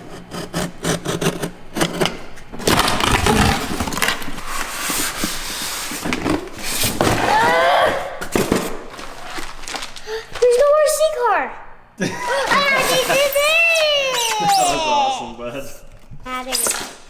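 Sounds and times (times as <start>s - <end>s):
cardboard box being torn open: 2.6s - 4.6s
child's high voice: 12.3s - 15.4s.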